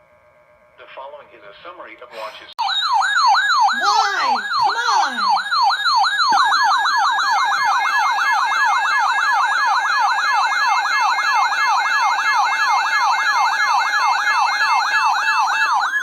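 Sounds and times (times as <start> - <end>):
electronic siren yelping: 2.6 - 16.0.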